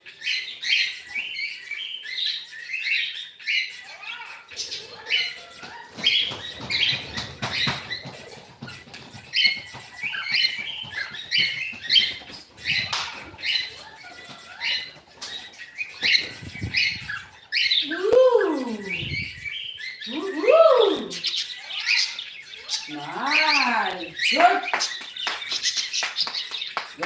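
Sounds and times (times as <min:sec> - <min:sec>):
cockatiel chirping: 0:00.0 - 0:17.8.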